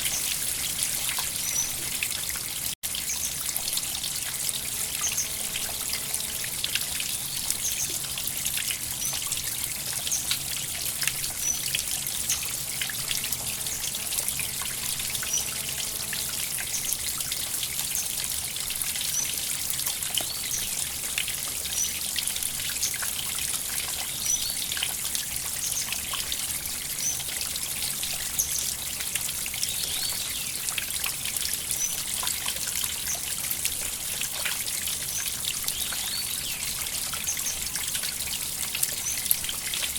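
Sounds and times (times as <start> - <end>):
river water babbling: 0.0 - 19.2.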